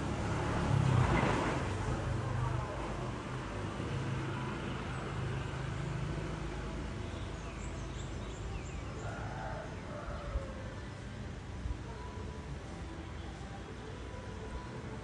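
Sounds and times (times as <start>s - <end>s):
distant traffic rumble: 0.0s - 15.0s.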